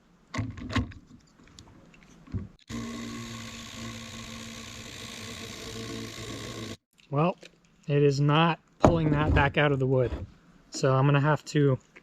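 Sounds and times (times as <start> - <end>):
cordless impact driver running: 2.7 - 6.8.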